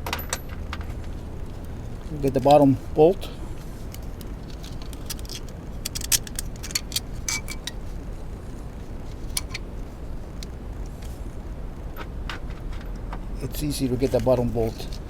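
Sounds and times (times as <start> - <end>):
metal bolt and nut clinking: 0.0 - 1.0, 4.6 - 7.8, 9.3 - 9.6
low background hum: 0.0 - 15.0.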